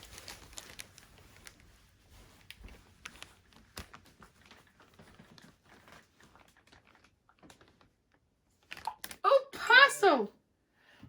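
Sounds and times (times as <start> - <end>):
soft rustling: 0.0 - 8.3.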